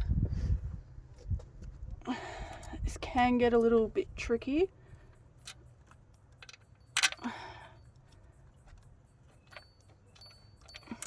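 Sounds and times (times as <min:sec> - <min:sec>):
metallic clicks of tools: 0:05.0 - 0:11.0.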